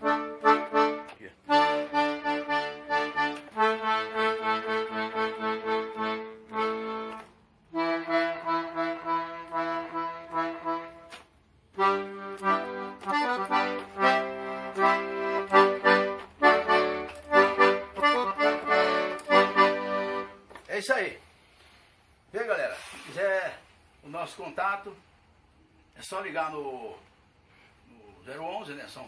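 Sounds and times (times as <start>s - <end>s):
accordion chords and bass notes: 0.0s - 20.5s.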